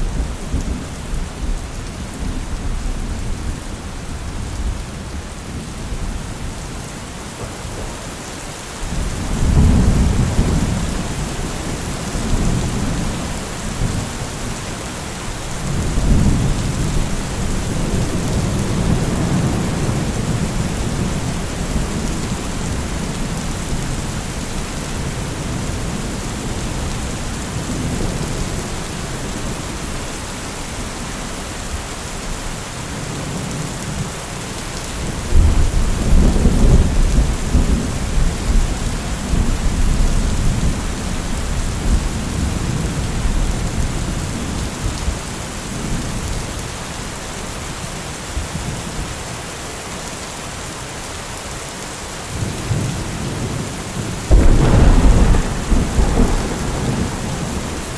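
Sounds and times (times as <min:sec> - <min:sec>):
heavy rain: 0:00.0 - 0:57.9
low rolling thunder: 0:08.9 - 0:14.4, 0:15.5 - 0:29.6, 0:35.3 - 0:46.4, 0:52.4 - 0:57.9
loud thunderclap: 0:54.3 - 0:57.9.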